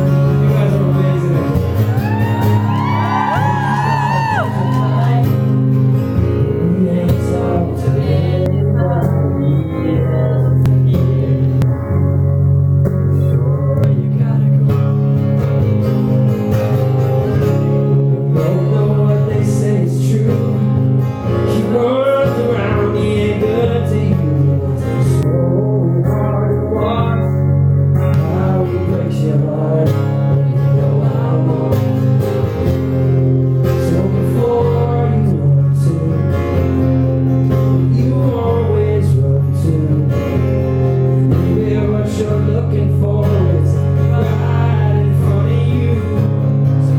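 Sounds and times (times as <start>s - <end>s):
man singing: 0.0s - 12.0s, 13.0s - 15.0s, 17.7s - 46.9s
guitar playing: 0.0s - 46.9s.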